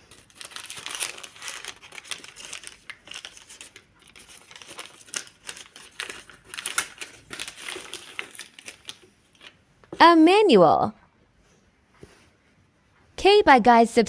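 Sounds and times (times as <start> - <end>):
packaging crinkling: 0.0 - 9.6.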